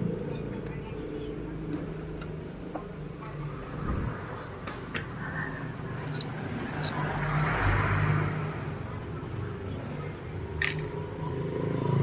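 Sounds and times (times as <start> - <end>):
sharp metallic clicks: 6.0 - 7.0.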